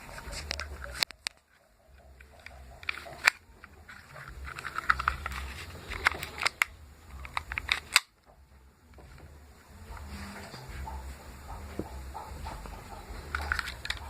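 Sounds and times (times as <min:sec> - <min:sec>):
handling clicks and taps: 0:00.0 - 0:08.4.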